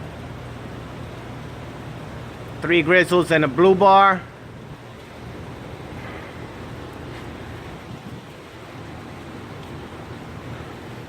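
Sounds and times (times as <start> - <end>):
steady rain falling: 0.0 - 11.0
wind rumbling on microphone: 4.7 - 11.0.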